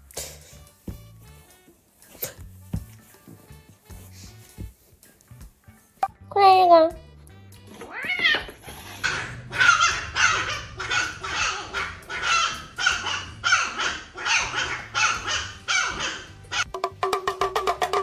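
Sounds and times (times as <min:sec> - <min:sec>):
dog barking: 0:09.0 - 0:16.6.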